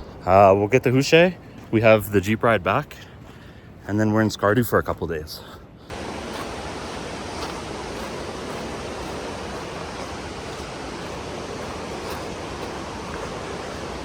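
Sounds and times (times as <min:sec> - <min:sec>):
river water rushing: 0:05.9 - 0:14.0.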